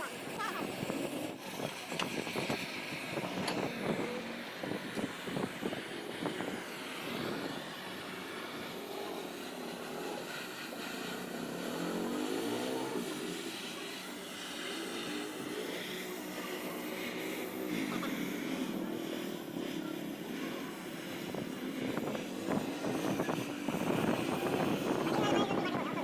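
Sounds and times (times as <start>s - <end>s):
motor whirring: 0.0s - 26.0s.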